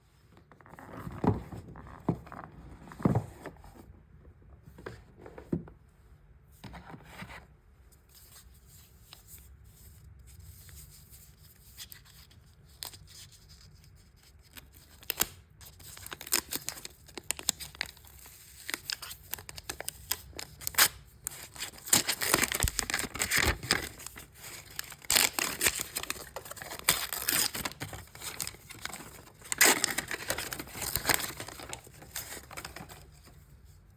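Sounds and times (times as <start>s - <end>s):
packaging tearing and crinkling: 14.9s - 33.0s.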